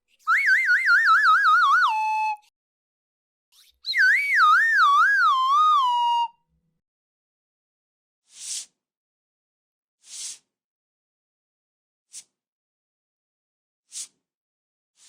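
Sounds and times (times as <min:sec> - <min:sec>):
cartoon slide whistle: 0:00.3 - 0:02.5, 0:03.9 - 0:06.3.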